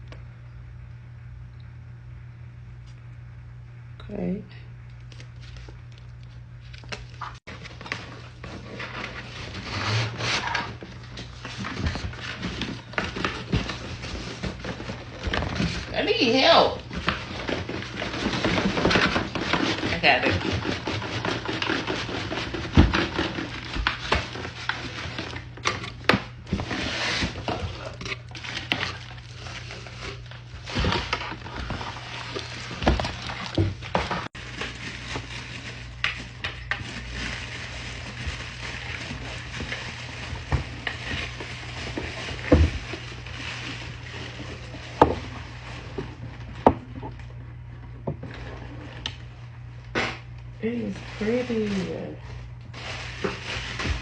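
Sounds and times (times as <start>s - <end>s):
packaging rustling: 16.8s - 46.6s, 51.0s - 54.0s.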